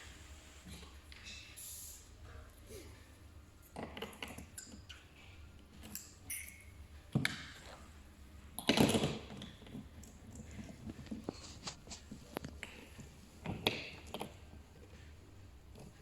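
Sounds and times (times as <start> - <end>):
tools clicking and tapping: 5.8 - 7.6.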